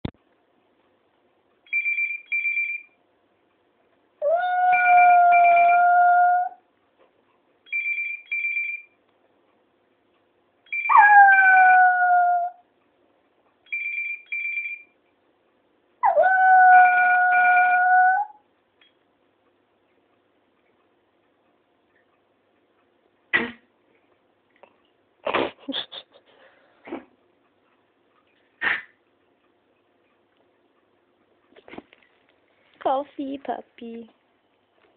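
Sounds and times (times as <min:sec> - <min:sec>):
dog howling: 0:04.2 - 0:06.6, 0:10.9 - 0:12.6, 0:16.0 - 0:18.4.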